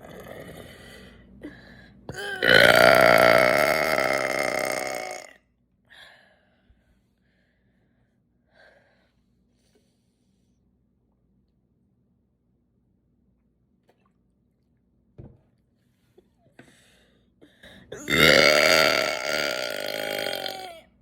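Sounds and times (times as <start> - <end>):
person burping: 0.0 - 0.8, 2.1 - 5.4, 18.0 - 20.8.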